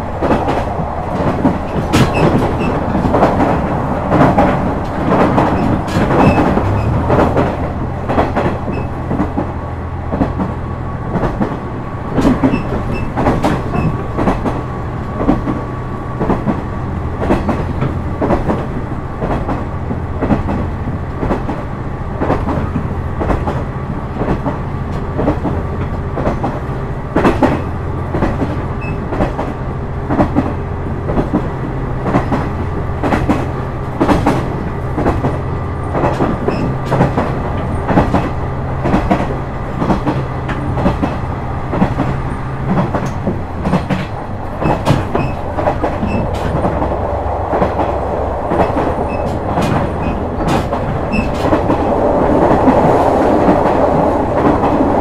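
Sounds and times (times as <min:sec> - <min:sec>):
train wheels clicking over rail joints: 0:00.0 - 0:55.0
rushing noise: 0:33.4 - 0:55.0.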